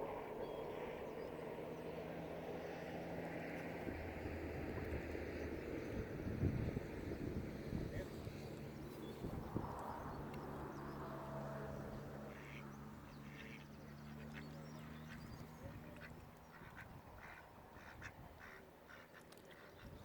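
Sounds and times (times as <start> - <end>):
ducks quacking: 12.3 - 20.0.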